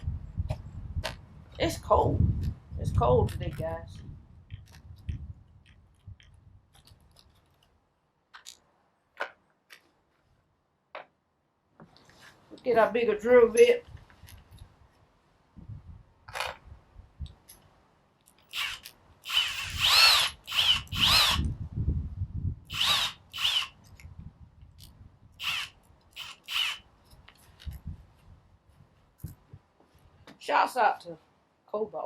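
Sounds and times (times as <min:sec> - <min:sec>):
cordless drill motor whine: 0:18.5 - 0:21.6, 0:22.7 - 0:23.8, 0:25.4 - 0:26.8.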